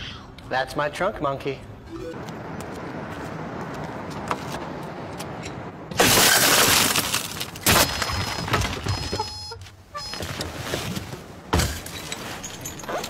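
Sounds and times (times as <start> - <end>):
glass smashing: 5.9 - 8.8.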